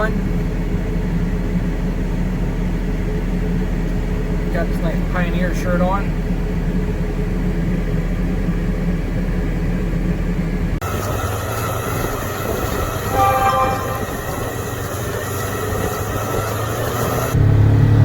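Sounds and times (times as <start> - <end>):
engine running: 6.1 - 18.0
noisy machine: 10.8 - 17.4
steady tone: 13.1 - 14.5.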